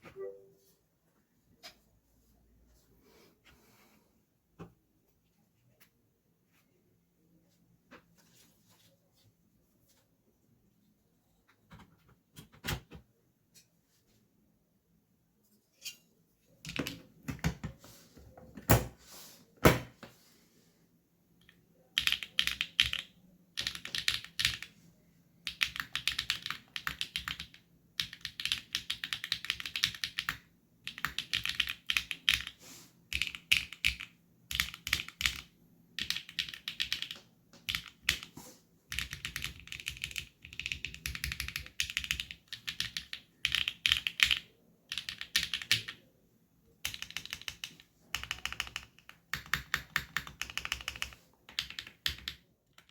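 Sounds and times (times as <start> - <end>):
mechanical keyboard typing: 21.4 - 24.7, 25.4 - 38.3, 38.9 - 46.0, 46.8 - 52.9.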